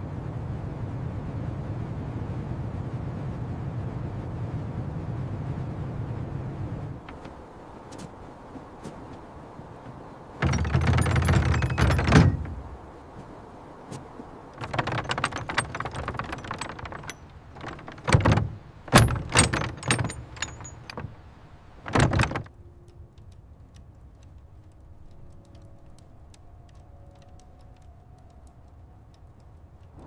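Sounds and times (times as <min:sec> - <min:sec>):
light clicks and rattles: 0:07.0 - 0:30.0
heavy knocks: 0:10.4 - 0:12.9, 0:14.6 - 0:22.5.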